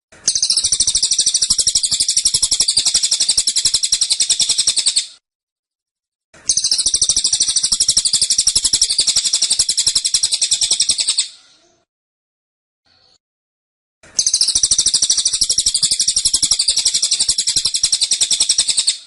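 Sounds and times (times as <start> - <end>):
songbird singing rapid high notes: 0.3 - 5.0, 6.5 - 11.2, 14.2 - 19.0.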